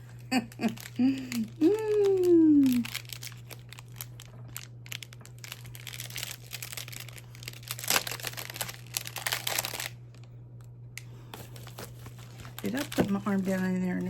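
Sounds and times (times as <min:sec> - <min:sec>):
plastic wrap crinkling: 0:00.0 - 0:14.0.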